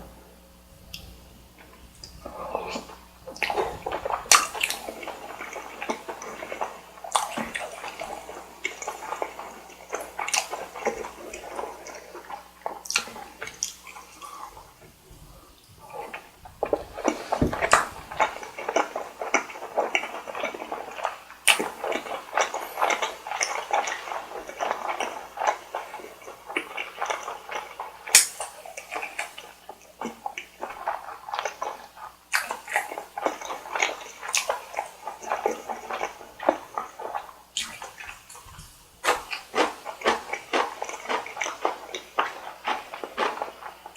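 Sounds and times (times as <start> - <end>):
wet chewing and mouth smacking: 0.9 - 43.9.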